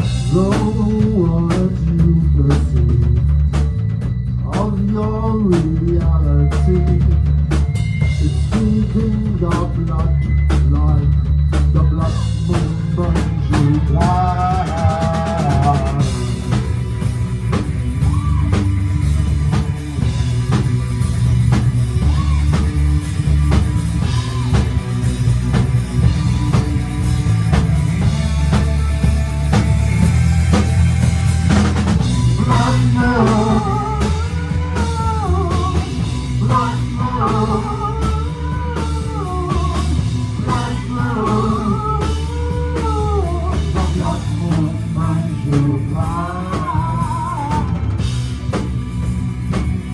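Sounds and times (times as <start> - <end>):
rock band playing: 0.0 - 49.9
wavering lead melody: 12.1 - 43.7.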